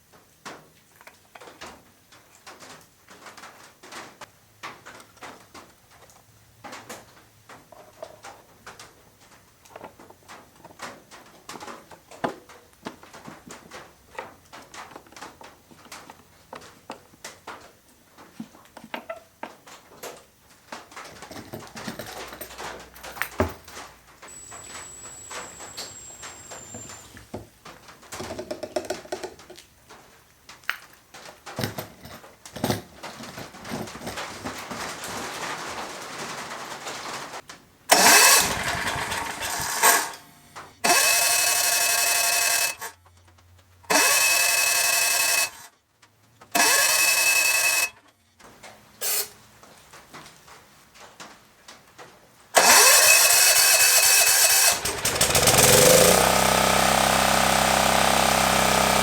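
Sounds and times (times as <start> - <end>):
generator engine running: 24.3 - 27.2, 37.9 - 42.9, 43.9 - 45.6, 46.6 - 47.8, 52.6 - 59.0.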